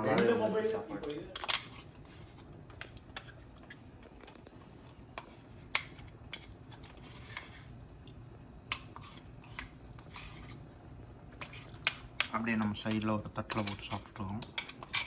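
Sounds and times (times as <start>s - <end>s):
cutlery scraping dishes: 0.0s - 4.4s, 5.1s - 7.8s, 8.7s - 10.6s, 11.4s - 15.0s
cutlery clinking on dishes: 0.1s - 1.9s, 11.4s - 15.0s.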